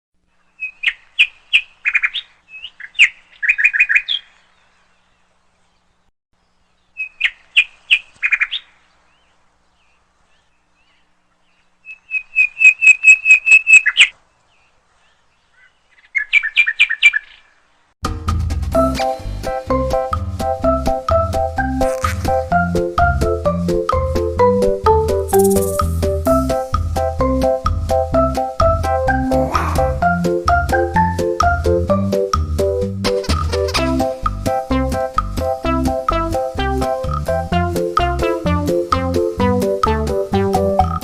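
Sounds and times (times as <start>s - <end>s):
bird calling sharp repeated notes: 11.8s - 14.2s, 21.7s - 22.8s, 25.3s - 26.3s
music: 18.0s - 41.0s.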